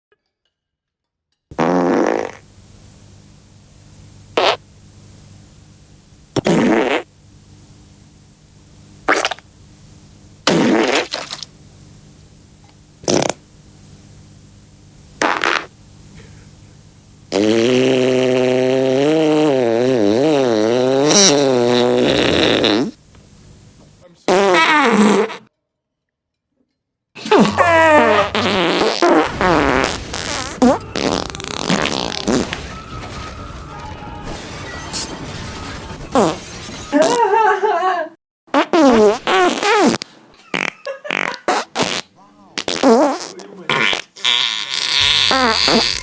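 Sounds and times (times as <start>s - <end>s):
wet fart sounds: 1.5s - 2.5s, 4.4s - 4.6s, 6.3s - 7.1s, 9.0s - 9.5s, 10.4s - 11.5s, 13.0s - 13.4s, 15.2s - 15.7s, 17.3s - 23.0s, 24.3s - 25.5s, 27.2s - 32.6s, 36.1s - 37.3s, 38.5s - 46.0s.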